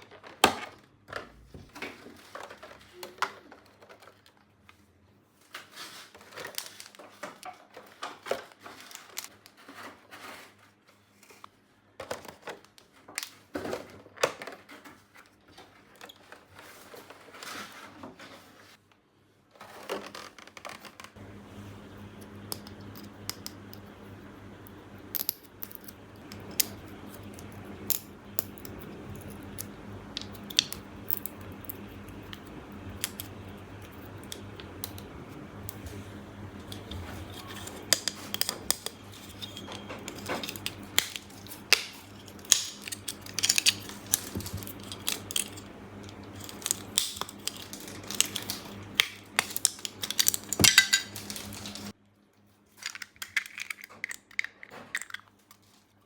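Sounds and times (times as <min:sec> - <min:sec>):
low steady hum: 0:21.2 - 0:52.4
plastic toy pieces clicking: 0:37.9 - 0:51.7, 0:52.8 - 0:55.4.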